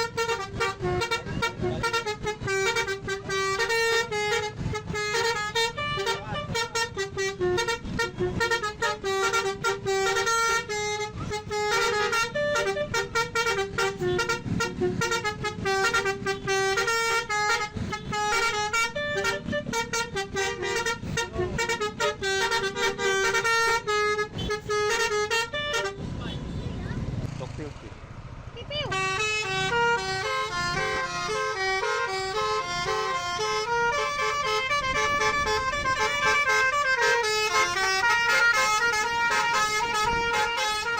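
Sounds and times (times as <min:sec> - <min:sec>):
bus musical horn playing tune: 0:00.0 - 0:26.8, 0:28.7 - 0:40.9.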